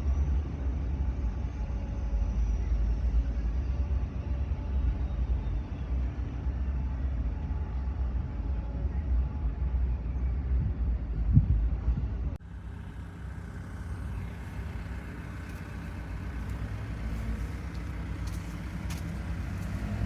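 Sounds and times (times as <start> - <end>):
heavy machinery rumbling: 12.4 - 20.0.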